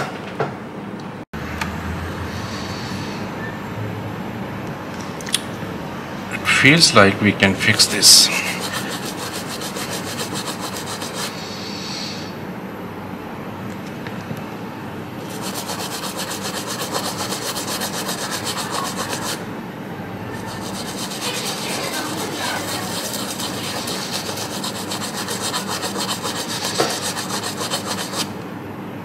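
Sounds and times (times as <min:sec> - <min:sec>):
scrubbing on a circuit board: 0:07.6 - 0:11.4, 0:15.2 - 0:19.5, 0:20.4 - 0:28.4.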